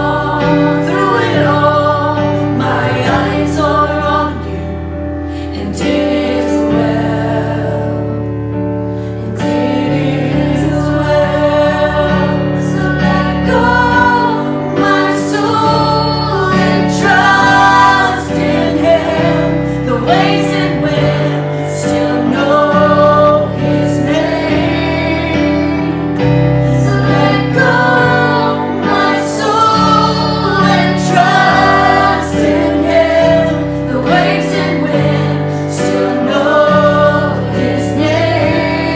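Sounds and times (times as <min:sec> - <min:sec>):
voices singing together: 0:00.0 - 0:38.9.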